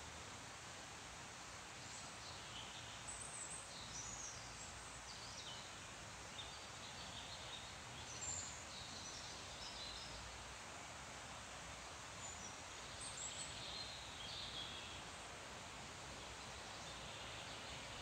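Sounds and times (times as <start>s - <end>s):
songbirds chirping: 1.4s - 18.0s.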